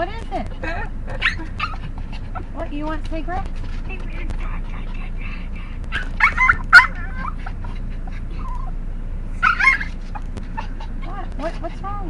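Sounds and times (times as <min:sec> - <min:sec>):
dog whining: 0:00.6 - 0:02.5, 0:04.4 - 0:08.8, 0:09.4 - 0:11.8.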